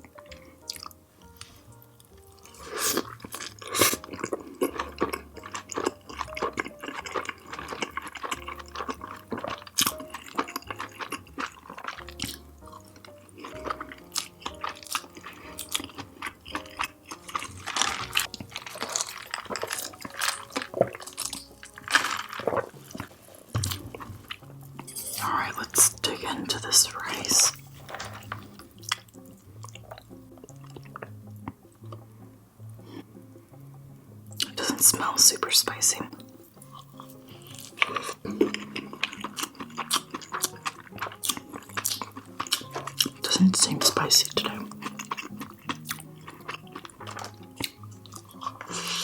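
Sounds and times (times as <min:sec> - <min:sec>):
wet chewing and smacking: 0:00.0 - 0:32.1, 0:34.3 - 0:49.0
soft background music: 0:00.0 - 0:49.0.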